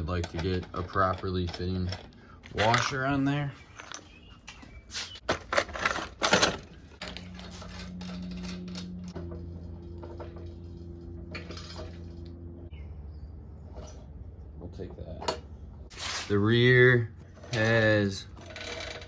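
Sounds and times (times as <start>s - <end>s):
steel washers clinking: 0.0s - 4.1s, 5.2s - 12.3s
steady low hum: 6.5s - 17.5s.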